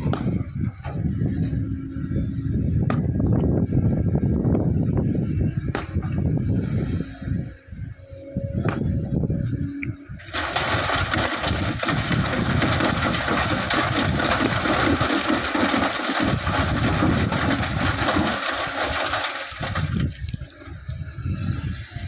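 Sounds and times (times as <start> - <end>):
excavator diesel engine running: 9.3 - 21.2.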